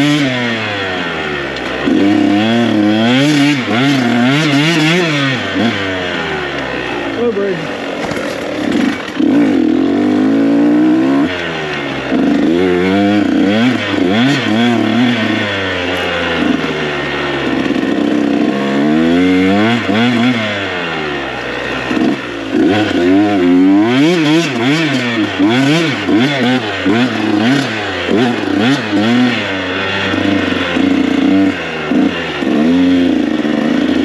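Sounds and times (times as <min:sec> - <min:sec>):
dirt bike engine revving: 0:00.0 - 0:34.0.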